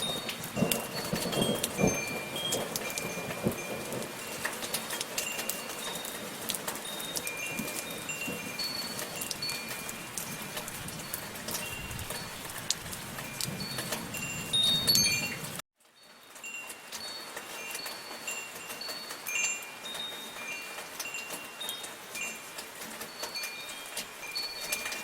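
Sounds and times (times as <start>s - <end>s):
soft rain: 0.0s - 25.0s
wind chimes ringing: 0.0s - 25.0s.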